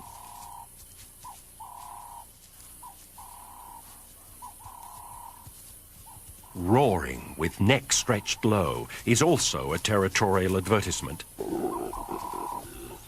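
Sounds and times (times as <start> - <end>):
bird calling: 0.0 - 13.0.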